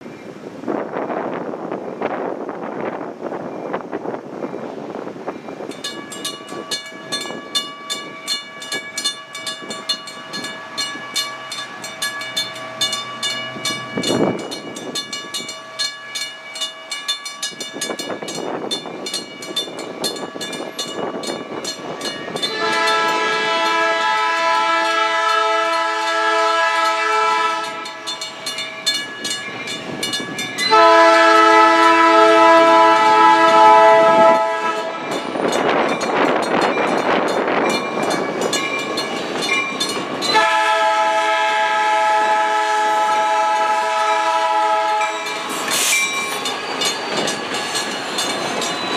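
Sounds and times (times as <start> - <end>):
crossing bells ringing: 1.4 - 48.9
locomotive air horn blasts: 22.4 - 28.1, 30.7 - 35.1, 40.3 - 45.3.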